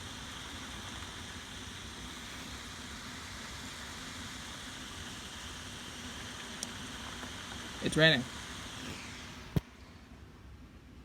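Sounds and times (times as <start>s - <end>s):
faint steady hum: 0.0s - 11.0s
steady rain hiss: 0.0s - 11.0s.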